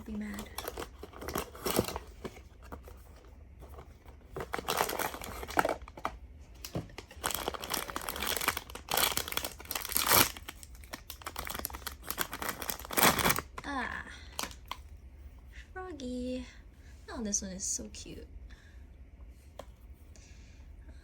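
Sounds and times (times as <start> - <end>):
packaging crinkling and tearing: 0.1 - 14.8.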